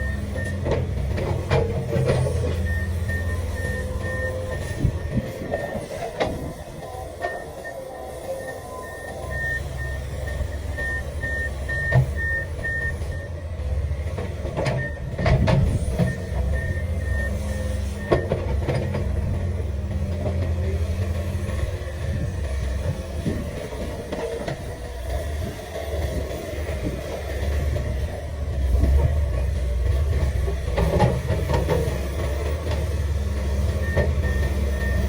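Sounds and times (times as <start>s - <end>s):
excavator diesel engine running: 0.0s - 35.0s
rapid high beeping alarm: 2.5s - 13.3s, 33.7s - 35.0s.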